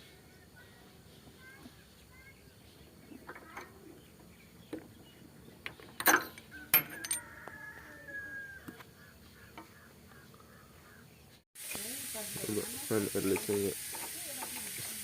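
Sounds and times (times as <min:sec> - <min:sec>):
metallic clinks of hand tools: 0:06.0 - 0:07.3.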